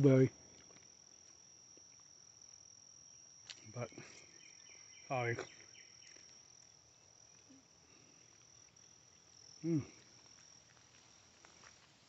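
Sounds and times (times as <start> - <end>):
insects trilling: 0.0 - 12.0
man making short vocal sound: 9.6 - 10.0.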